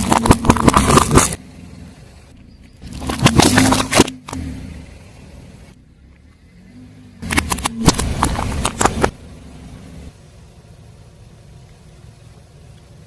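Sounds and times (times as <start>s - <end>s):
tyre crushing brittle objects: 0.0s - 1.4s, 2.8s - 4.4s
car engine running: 0.0s - 13.0s.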